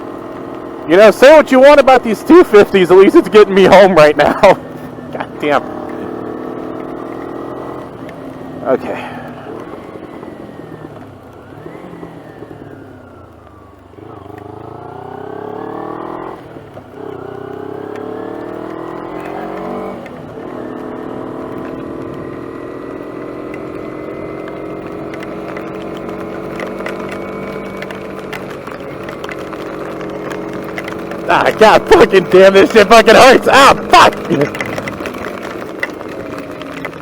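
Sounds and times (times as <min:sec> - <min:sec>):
motorcycle engine accelerating: 0:00.0 - 0:37.0
hailstones striking: 0:24.4 - 0:37.0.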